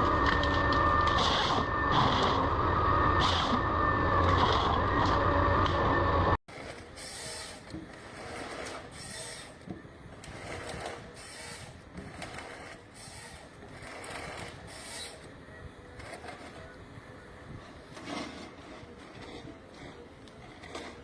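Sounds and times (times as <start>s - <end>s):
hissing scraping bursts: 6.7s - 9.6s, 10.2s - 15.3s.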